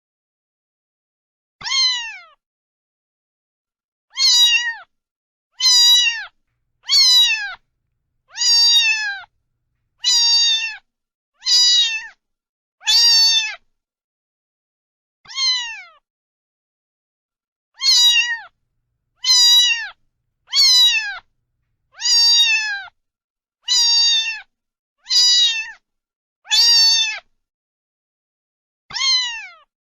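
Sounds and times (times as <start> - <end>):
cat meowing: 4.2 - 4.7, 5.6 - 7.6, 8.3 - 9.3, 10.0 - 10.8, 11.4 - 12.1, 17.8 - 18.5, 19.2 - 21.3, 21.9 - 22.8, 23.7 - 24.4, 28.9 - 29.6.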